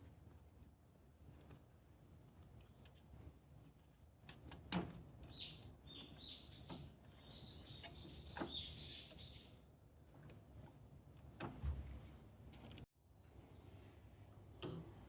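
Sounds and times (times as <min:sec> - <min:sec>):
bird chirping: 0:05.3 - 0:09.6.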